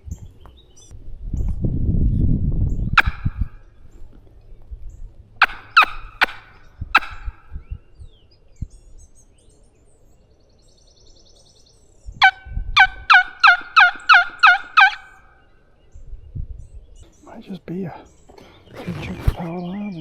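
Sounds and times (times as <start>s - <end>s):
turkey yelping: 3.0s - 3.4s, 5.4s - 7.4s, 12.2s - 15.3s.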